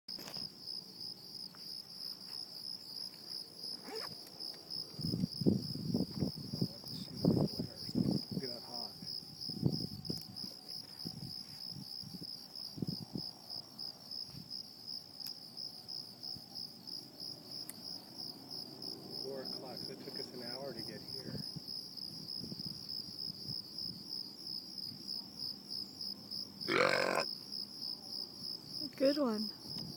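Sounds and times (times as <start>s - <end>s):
crickets chirping: 0.1s - 29.9s
man belching: 26.7s - 27.3s.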